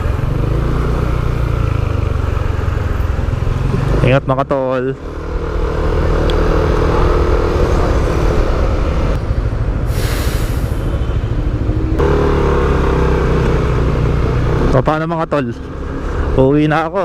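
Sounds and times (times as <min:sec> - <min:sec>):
motorcycle engine running: 0:00.0 - 0:09.9, 0:11.0 - 0:16.6
road and wind rumble: 0:00.0 - 0:17.0
loud hiss: 0:09.9 - 0:10.8.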